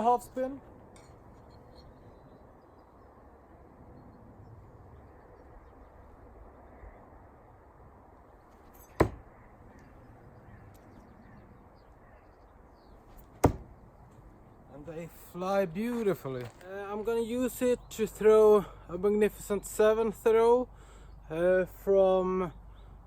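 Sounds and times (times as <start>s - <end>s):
knife striking target thunk: 8.7s - 9.3s, 13.1s - 13.7s.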